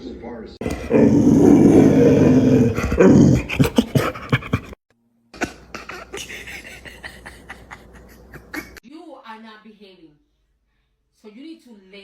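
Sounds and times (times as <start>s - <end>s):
dog vocalizing: 0.6s - 4.8s.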